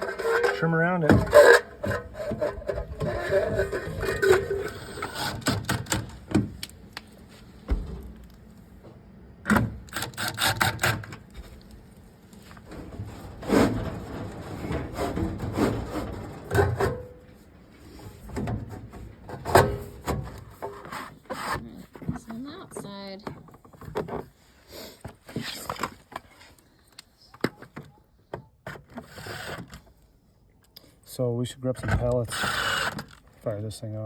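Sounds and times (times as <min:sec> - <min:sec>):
building materials knocking and scraping: 0:00.0 - 0:06.6, 0:12.4 - 0:17.3.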